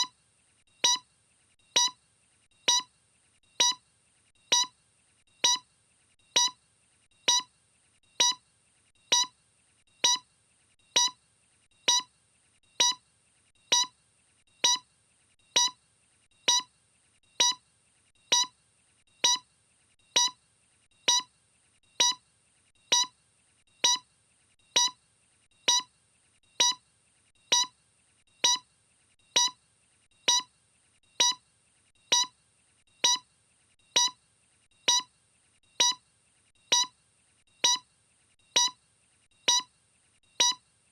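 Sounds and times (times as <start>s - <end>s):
short beeps: 0.8s - 1.0s, 1.8s - 2.0s, 2.7s - 2.9s, 3.6s - 3.8s, 4.5s - 4.7s, 5.4s - 5.6s, 6.4s - 6.6s, 7.3s - 7.5s, 8.2s - 8.4s, 9.1s - 9.3s, 10.0s - 10.2s, 11.0s - 11.2s, 11.9s - 12.1s, 12.8s - 13.0s, 13.7s - 13.9s, 14.6s - 14.8s, 15.6s - 15.8s, 16.5s - 16.7s, 17.4s - 17.6s, 18.3s - 18.5s, 19.2s - 19.4s, 20.2s - 20.4s, 21.1s - 21.3s, 22.0s - 22.2s, 22.9s - 23.1s, 23.8s - 24.0s, 24.8s - 25.0s, 25.7s - 25.9s, 26.6s - 26.8s, 27.5s - 27.7s, 28.4s - 28.6s, 29.4s - 29.6s, 30.3s - 30.5s, 31.2s - 31.4s, 32.1s - 32.3s, 33.0s - 33.2s, 34.0s - 34.2s, 34.9s - 35.1s, 35.8s - 36.0s, 36.7s - 36.9s, 37.6s - 37.8s, 38.6s - 38.8s, 39.5s - 39.7s, 40.4s - 40.6s.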